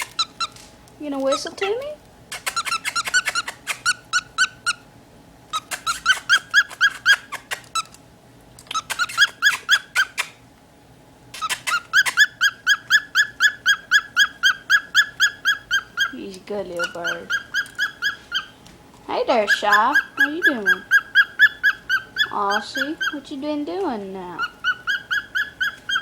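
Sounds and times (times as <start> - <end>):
cockatiel chirping: 0.0 - 0.6, 2.3 - 4.8, 5.5 - 7.9, 8.7 - 10.4, 11.4 - 18.6, 19.2 - 23.3, 24.3 - 26.0.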